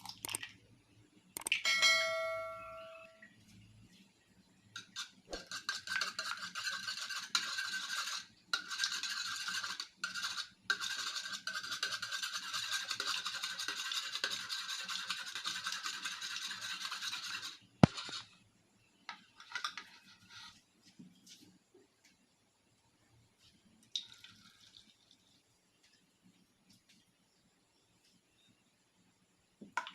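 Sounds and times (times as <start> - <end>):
whisking in a mixing bowl: 4.8 - 18.2.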